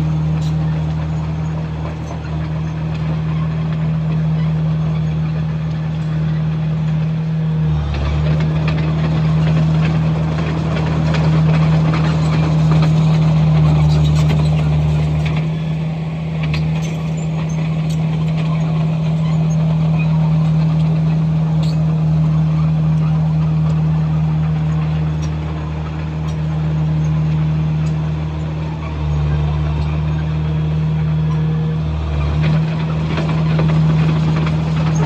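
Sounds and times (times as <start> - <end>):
bulldozer diesel engine: 0.0 - 35.0
clanking and scraping: 8.0 - 15.7, 16.3 - 22.0.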